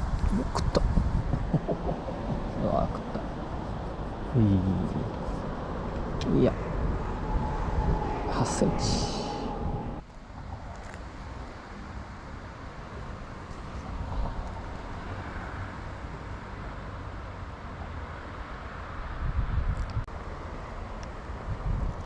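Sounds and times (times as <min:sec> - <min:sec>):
constant low rumble: 0:00.0 - 0:11.7.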